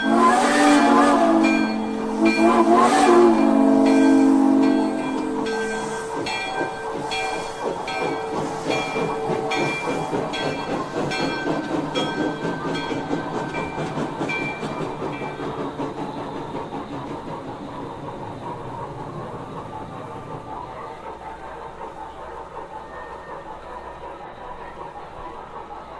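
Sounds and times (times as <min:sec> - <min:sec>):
steam whistle: 0:00.0 - 0:10.3
locomotive bell ringing: 0:00.0 - 0:16.1
steam chuffing: 0:00.0 - 0:25.9.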